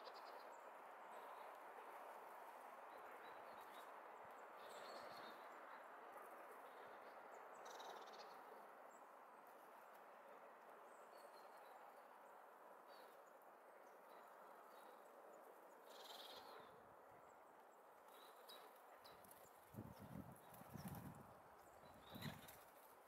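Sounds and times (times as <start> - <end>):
small birds calling: 15.8 - 16.8.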